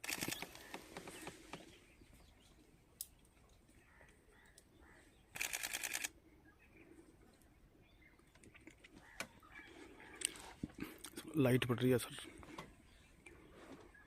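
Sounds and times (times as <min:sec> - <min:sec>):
camera shutter burst: 0:00.0 - 0:00.7, 0:05.4 - 0:06.1.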